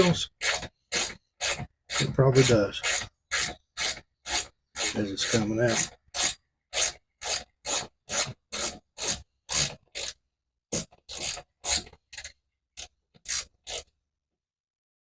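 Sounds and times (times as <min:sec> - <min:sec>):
ratchet wrench clicking: 0:11.1 - 0:13.9.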